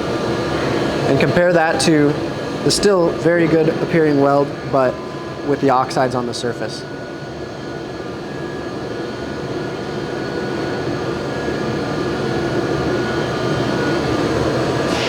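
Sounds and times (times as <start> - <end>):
mechanical hum: 0.0 - 15.0
rushing air noise: 14.4 - 15.0.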